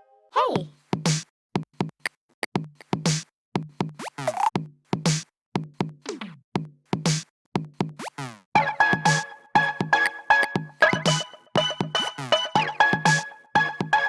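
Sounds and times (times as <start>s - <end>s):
electronic ringtone drum beat: 8.6s - 14.0s
ringtone with held notes: 8.6s - 14.0s.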